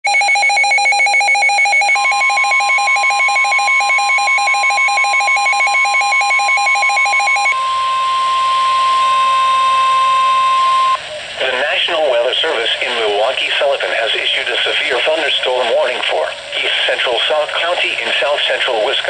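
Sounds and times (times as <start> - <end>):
steady warning alert tone: 0.1 - 7.6
two-pitched alarm beeping: 0.1 - 11.0.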